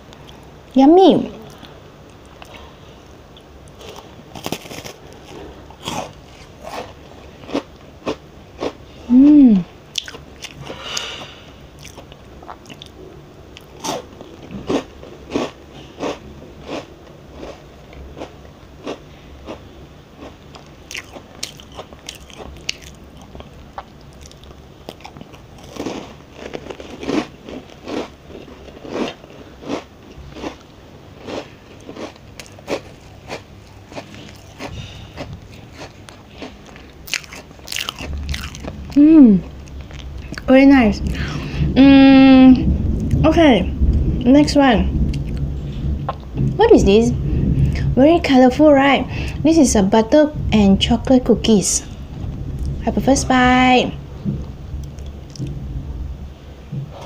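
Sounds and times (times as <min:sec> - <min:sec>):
cookie crunching while chewing: 0:03.7 - 0:08.8, 0:11.8 - 0:19.6, 0:20.2 - 0:38.8
person humming: 0:09.1 - 0:09.7, 0:39.0 - 0:39.4.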